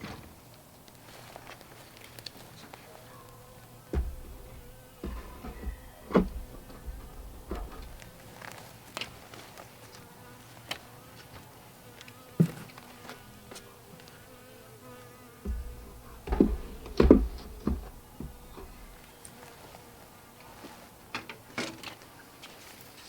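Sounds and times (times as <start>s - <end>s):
honeybees buzzing: 1.2s - 23.0s
knocks and bumps on hive: 3.8s - 9.1s, 12.1s - 19.5s.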